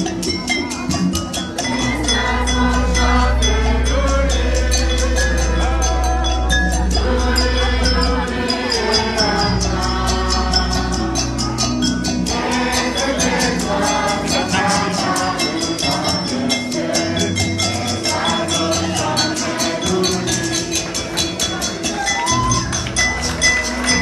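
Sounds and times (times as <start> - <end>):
percussion beat of sharp clicks: 0.0 - 24.0
person singing: 1.6 - 17.4.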